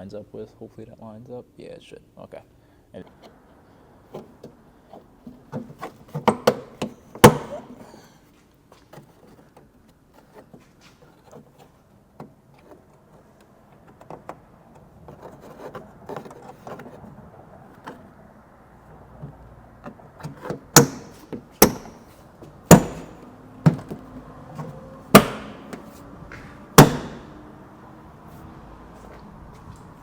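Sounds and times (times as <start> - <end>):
plastic rubbing against plastic: 4.1 - 19.0.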